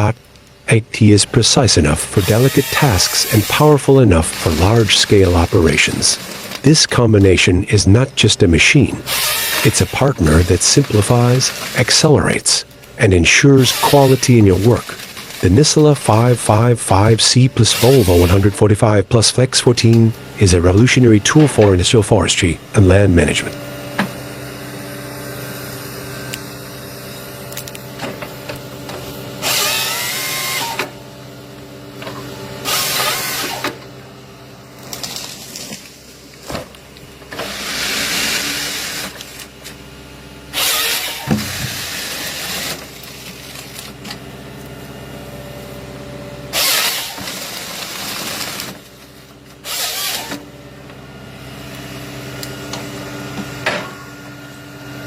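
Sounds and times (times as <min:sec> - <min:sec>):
diesel engine running: 0:00.0 - 0:29.7
harvester head cutting bursts: 0:01.9 - 0:06.7, 0:09.0 - 0:12.1, 0:12.9 - 0:16.6, 0:17.6 - 0:18.7, 0:29.4 - 0:31.0, 0:32.1 - 0:33.9, 0:40.5 - 0:43.2, 0:46.5 - 0:48.9, 0:49.6 - 0:50.5.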